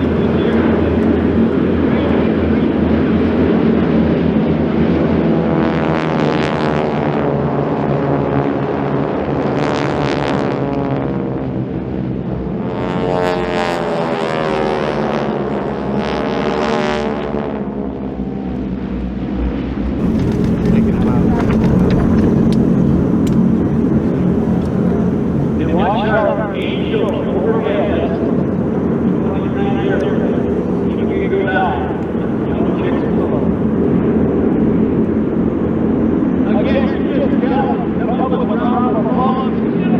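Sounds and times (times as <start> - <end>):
propeller aircraft droning past: 20.0 - 27.0.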